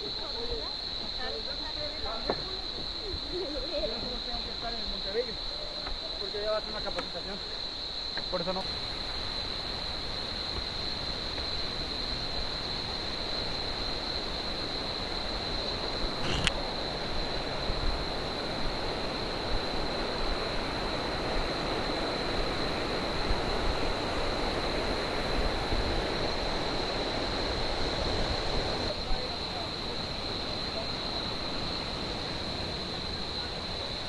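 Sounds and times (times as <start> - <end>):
high-pitched insect drone: 16.2 - 16.6
sharp click: 16.2 - 16.6.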